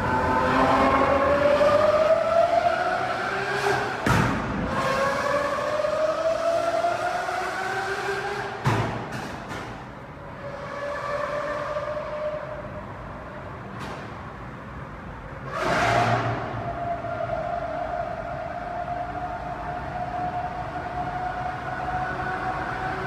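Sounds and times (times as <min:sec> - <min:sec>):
car engine accelerating: 0:00.0 - 0:09.5.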